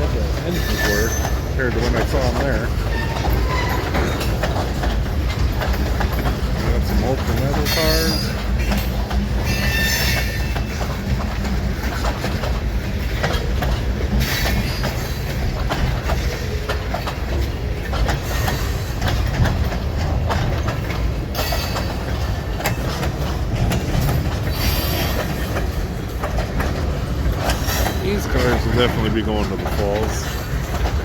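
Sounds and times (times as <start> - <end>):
wheels clicking over rail joints: 0.0 - 31.0
high-pitched wheel squeal: 0.5 - 1.5, 9.4 - 10.6.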